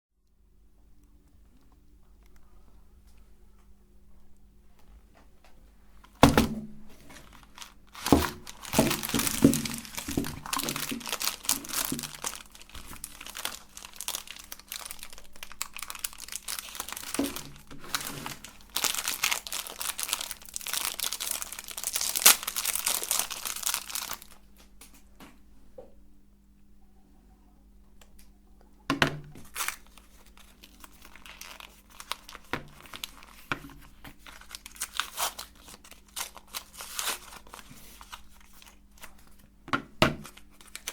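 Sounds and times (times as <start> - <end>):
soap crunching in meat grinder: 6.2 - 24.3, 29.4 - 39.2.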